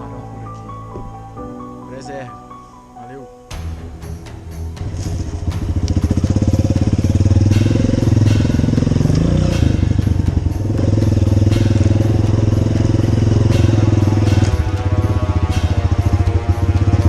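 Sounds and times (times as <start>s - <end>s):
dirt bike engine running: 4.7s - 17.0s.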